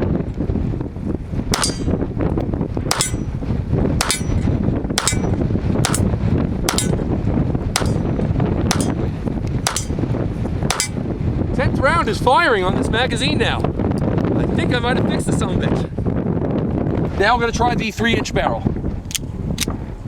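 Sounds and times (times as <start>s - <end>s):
wind rumble on microphone: 0.0s - 20.0s
pistol shots: 1.6s - 1.9s, 2.9s - 3.3s, 4.0s - 4.4s, 5.0s - 6.1s, 6.7s - 7.0s, 7.8s - 8.0s, 8.7s - 9.0s, 9.7s - 10.0s, 10.7s - 11.0s
metallic ring: 1.6s - 2.0s, 2.9s - 3.3s, 4.0s - 6.1s, 6.7s - 7.0s, 7.8s - 8.0s, 8.7s - 9.0s, 9.7s - 10.0s, 10.7s - 11.0s.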